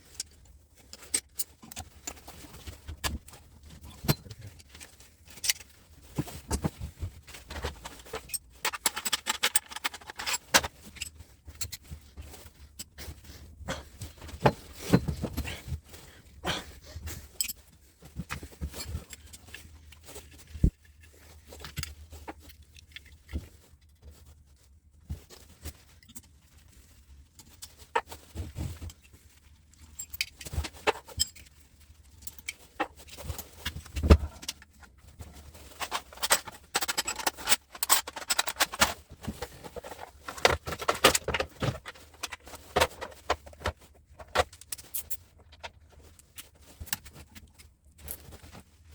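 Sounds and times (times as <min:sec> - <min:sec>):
metal parts clattering: 0:07.4 - 0:11.9, 0:35.6 - 0:45.7
hand tools clicking and knocking on metal: 0:07.4 - 0:12.0, 0:35.6 - 0:45.8.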